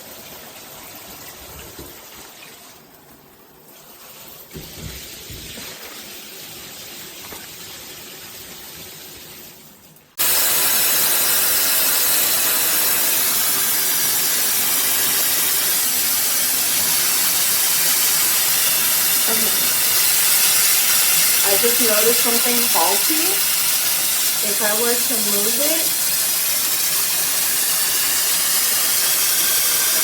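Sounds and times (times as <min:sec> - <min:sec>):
shower head spraying water: 0:10.2 - 0:30.0.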